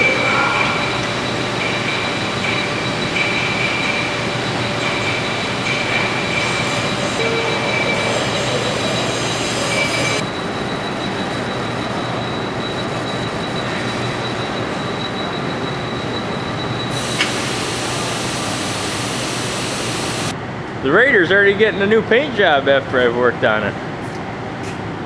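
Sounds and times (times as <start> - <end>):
metal lathe machining: 0.0 - 20.4
thin high whine: 0.0 - 20.4.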